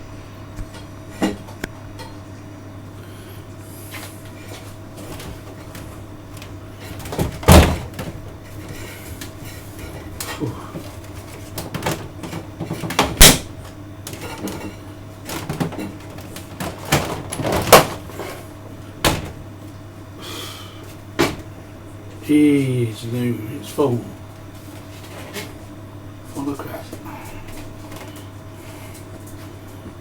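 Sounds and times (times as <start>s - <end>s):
steady low hum: 0.0s - 30.0s
knocks and rattles of plastic casing: 5.0s - 8.8s, 9.9s - 18.4s.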